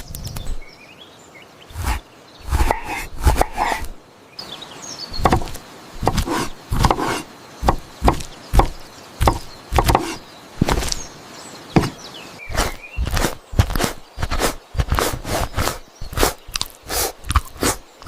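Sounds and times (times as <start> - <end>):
knife chopping on cutting board: 1.8 - 3.9, 5.2 - 10.9, 11.8 - 15.2.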